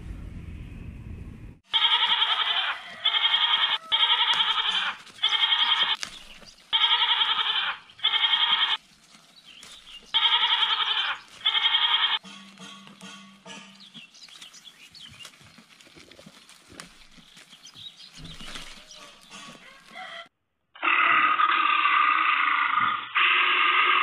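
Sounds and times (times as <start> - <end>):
goat bleating: 1.7 - 6.1, 6.7 - 8.8, 10.0 - 12.2.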